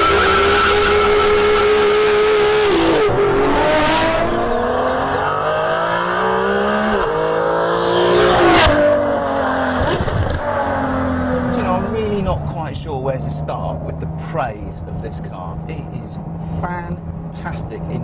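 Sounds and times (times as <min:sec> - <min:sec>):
car engine revving through gears: 0:00.0 - 0:12.5.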